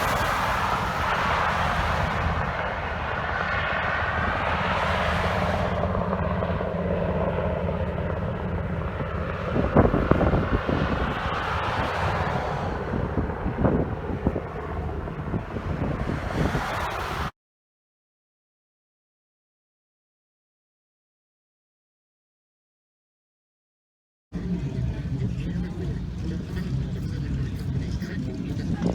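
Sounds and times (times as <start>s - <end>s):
aircraft engines droning: 0.0s - 17.3s, 24.4s - 28.9s.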